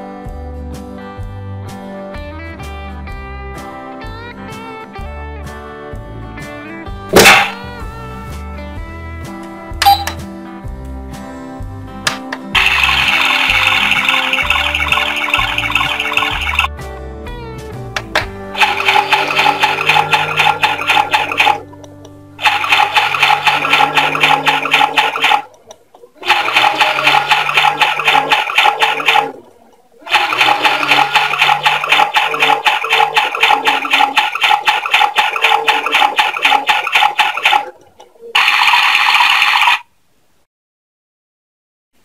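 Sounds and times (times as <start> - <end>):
toy washing machine sound effect: 7.1 - 7.8, 9.8 - 10.2, 12.6 - 16.7, 18.0 - 21.8, 22.4 - 39.9
simple electronic tune: 9.8 - 10.2, 12.6 - 16.7, 22.4 - 25.5.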